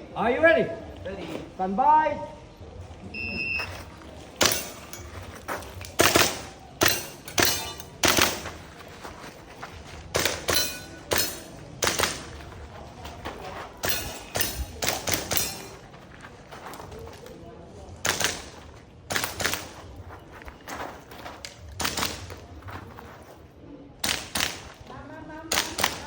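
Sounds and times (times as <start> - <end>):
airsoft pistol shots: 6.0 - 8.4, 13.8 - 15.7, 25.5 - 26.0.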